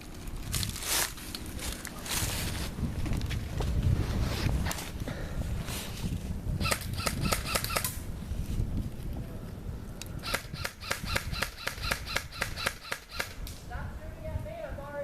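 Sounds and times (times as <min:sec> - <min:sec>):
airsoft gun shots: 0:10.2 - 0:13.4.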